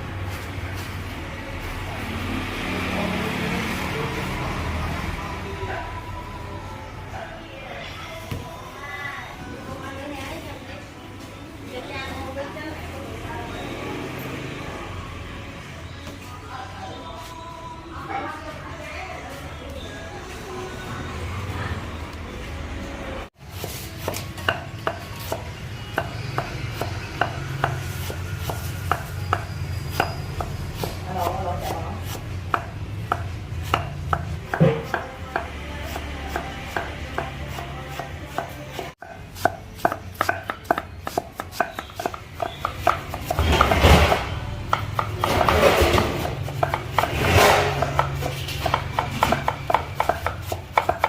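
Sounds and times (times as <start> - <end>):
knife chopping on cutting board: 26.0 - 51.0
rough scraping: 37.9 - 51.0.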